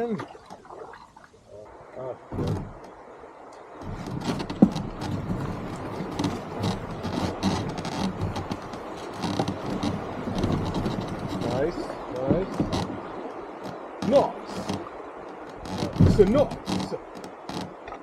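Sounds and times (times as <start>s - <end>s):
knocks clicks and scrapes: 2.4s - 2.9s, 3.8s - 13.0s, 15.5s - 18.0s.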